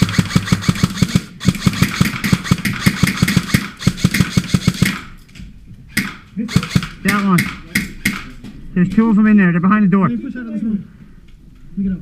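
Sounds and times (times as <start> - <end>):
airsoft gun rapid firing: 0.0 - 5.2, 6.0 - 8.4.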